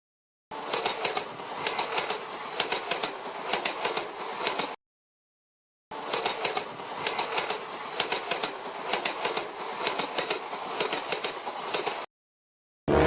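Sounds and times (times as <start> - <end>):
train wheels clattering: 0.6 - 4.8, 6.0 - 12.1.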